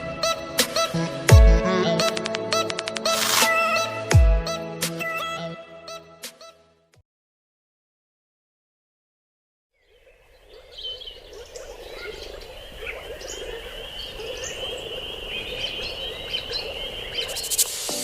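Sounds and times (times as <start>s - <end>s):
bird chirps: 9.7s - 18.0s.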